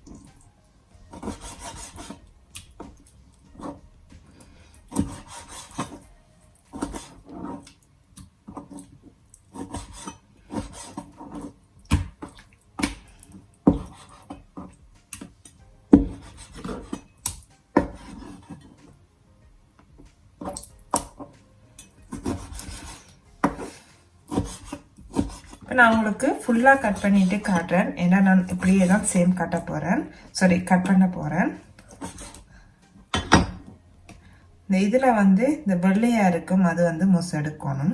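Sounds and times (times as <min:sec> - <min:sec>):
knife cutting raw chicken: 0:01.1 - 0:03.0, 0:03.6 - 0:07.8, 0:08.5 - 0:15.3, 0:15.9 - 0:19.0, 0:22.0 - 0:27.7, 0:31.8 - 0:32.5.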